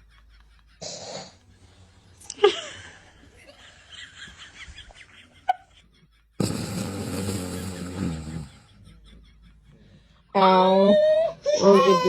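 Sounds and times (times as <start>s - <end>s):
stifled laughter: 0.0s - 1.6s, 2.3s - 10.2s.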